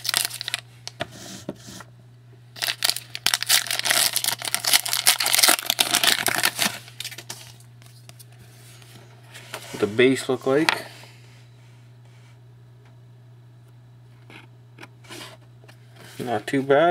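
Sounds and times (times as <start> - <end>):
foil wrapper tearing and crinkling: 0.0 - 0.6, 2.6 - 7.5
steady low hum: 0.0 - 16.9.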